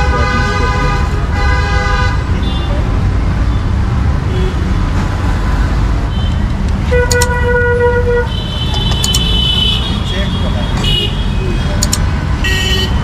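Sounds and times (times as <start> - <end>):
vehicle horn honk: 0.0 - 2.7, 6.9 - 11.4
road traffic rumble: 0.0 - 13.0.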